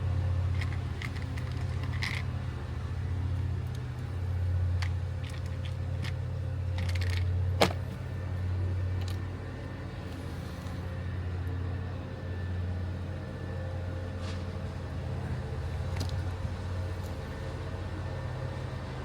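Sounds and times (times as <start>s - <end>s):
low mechanical hum: 0.0s - 19.0s
metal parts clinking: 0.6s - 2.2s, 4.8s - 6.2s, 6.8s - 7.8s.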